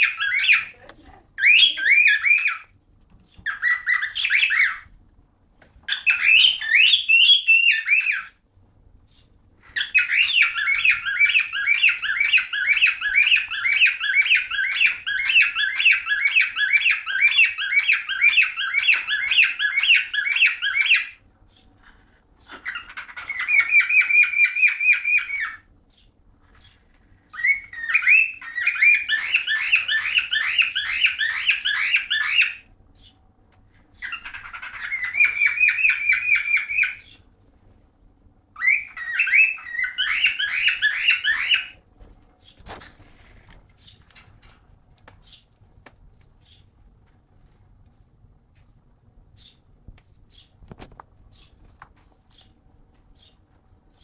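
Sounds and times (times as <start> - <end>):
cockatiel whistling song: 5.9 - 8.3, 9.8 - 21.2, 22.6 - 25.6, 27.3 - 32.6, 34.0 - 37.1, 38.6 - 41.8.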